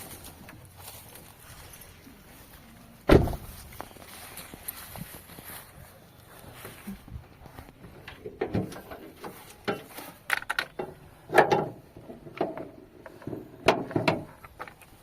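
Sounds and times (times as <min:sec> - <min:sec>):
parts clunking inside a car: 0:07.9 - 0:14.9.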